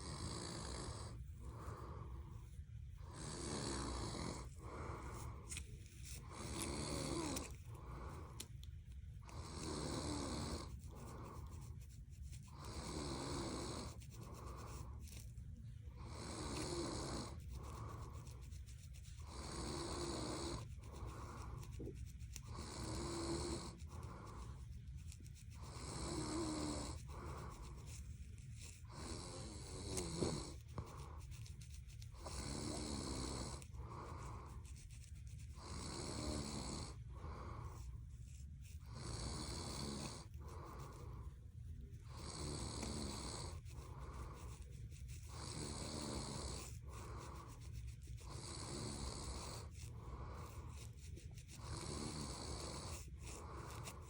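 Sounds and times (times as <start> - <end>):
person snoring: 0.0 - 2.1, 3.0 - 5.6, 6.2 - 8.4, 9.2 - 11.4, 12.5 - 14.5, 16.0 - 18.1, 19.3 - 21.5, 22.5 - 24.3, 25.7 - 27.5, 28.9 - 31.1, 32.2 - 34.5, 35.6 - 37.8, 38.9 - 41.2, 42.1 - 44.5, 45.3 - 47.4, 51.6 - 54.0.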